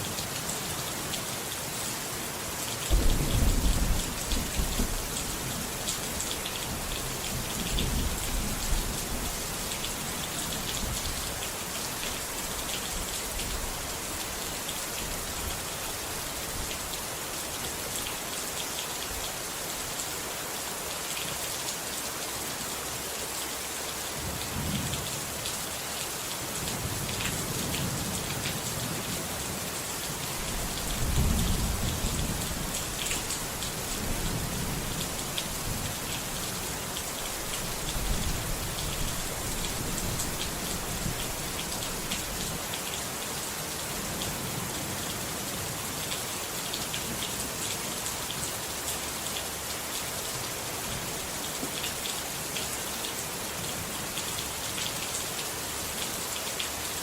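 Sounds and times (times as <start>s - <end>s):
heavy rain: 0.0s - 57.0s
low rolls of thunder: 2.9s - 5.6s, 30.5s - 32.8s.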